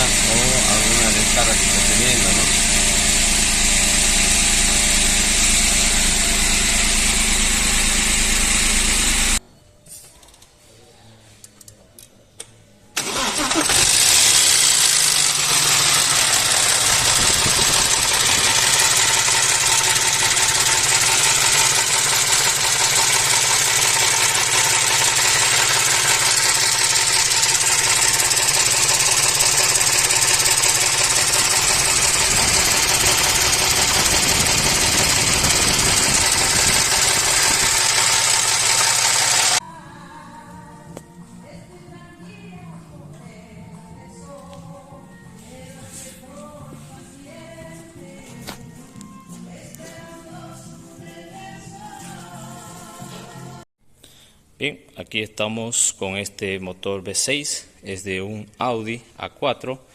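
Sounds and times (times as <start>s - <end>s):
car engine idling: 0.0s - 9.4s, 13.0s - 39.6s.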